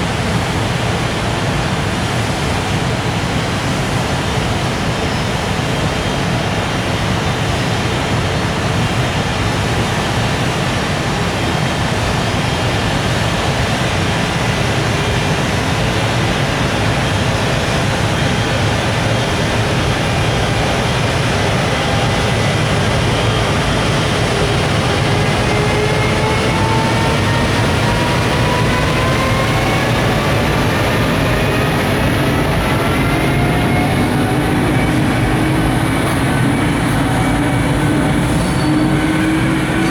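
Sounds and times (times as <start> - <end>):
freight train rumble: 0.0 - 39.9
faint rising whine: 14.8 - 39.9.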